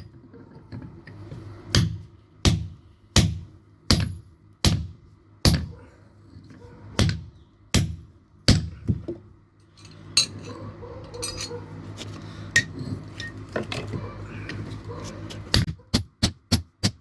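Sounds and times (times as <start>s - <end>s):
hammer striking metal on anvil: 1.7s - 5.7s.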